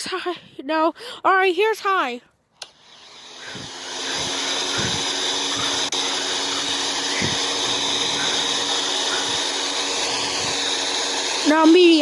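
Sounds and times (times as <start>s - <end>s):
faint motor hum: 2.6s - 12.0s
fan air whoosh: 3.2s - 11.9s.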